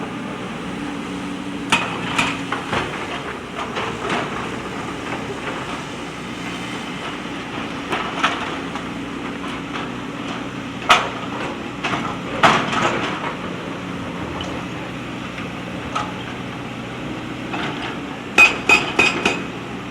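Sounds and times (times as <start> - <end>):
backhoe diesel engine running: 0.0 - 19.9
metallic clanks and knocks: 17.5 - 19.6.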